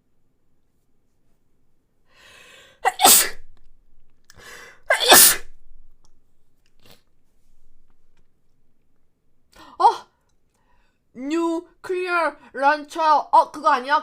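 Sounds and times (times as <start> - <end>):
drawn-in breath: 2.1 - 2.8
person sneezing: 2.8 - 3.5, 4.9 - 5.6.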